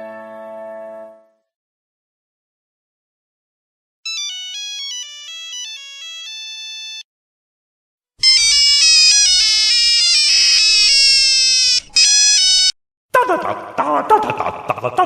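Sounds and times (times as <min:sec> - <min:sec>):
fuller phone ringtone melody: 0:04.0 - 0:07.1, 0:08.2 - 0:12.8
beepy phone ringtone: 0:04.1 - 0:07.1, 0:08.2 - 0:12.8.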